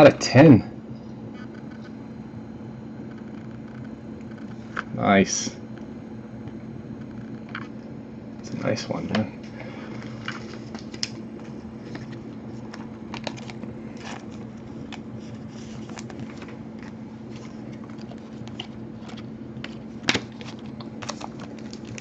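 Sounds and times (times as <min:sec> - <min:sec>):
low hum: 0:00.0 - 0:22.0
trading cards flipping: 0:09.8 - 0:22.0.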